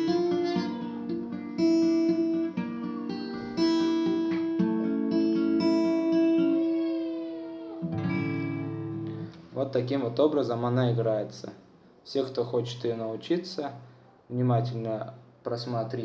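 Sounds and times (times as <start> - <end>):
fingerpicked acoustic guitar chords: 0.0 - 10.3.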